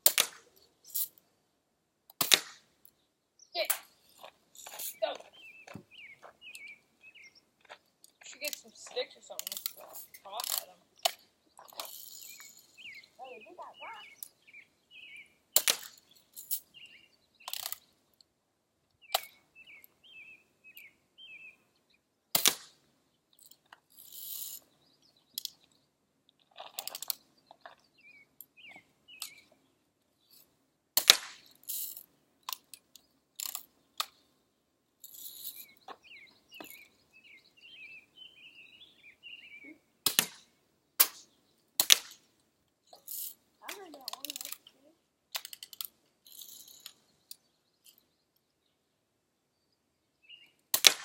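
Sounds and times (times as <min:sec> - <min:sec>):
small birds chirping: 0:00.5 - 0:01.6, 0:02.7 - 0:22.2, 0:23.0 - 0:30.6, 0:31.4 - 0:50.8
bb gun shots: 0:31.0 - 0:31.5, 0:40.1 - 0:41.2, 0:50.8 - 0:51.0.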